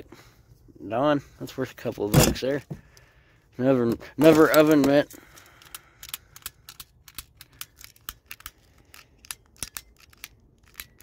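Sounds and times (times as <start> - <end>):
small items rummaged through: 3.9 - 11.0.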